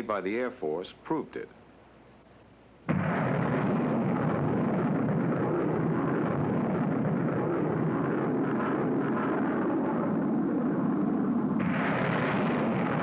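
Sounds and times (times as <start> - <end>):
rocket motors firing: 2.9 - 13.0.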